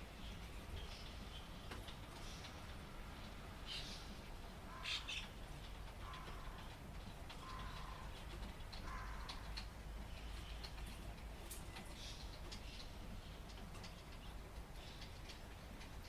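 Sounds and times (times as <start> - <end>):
low traffic rumble: 0.0 - 16.0
drip-like ticks: 5.2 - 16.0.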